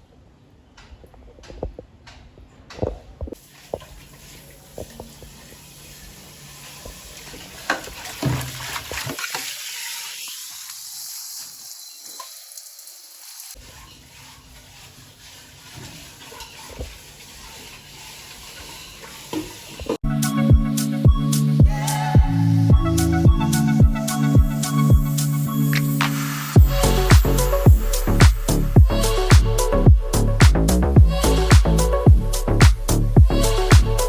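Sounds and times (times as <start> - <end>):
food hissing in a pot: 3.4 - 7.6, 9.4 - 20.0.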